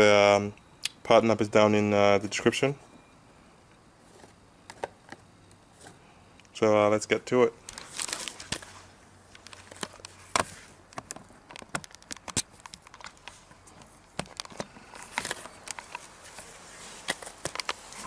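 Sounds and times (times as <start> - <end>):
parts and packaging clicking: 4.2 - 6.6, 7.6 - 18.0.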